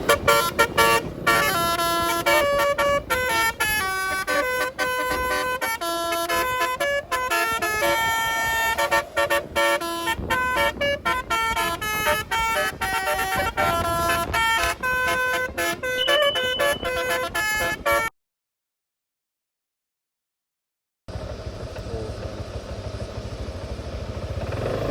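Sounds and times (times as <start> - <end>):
bus musical horn melody: 0.0 - 18.1.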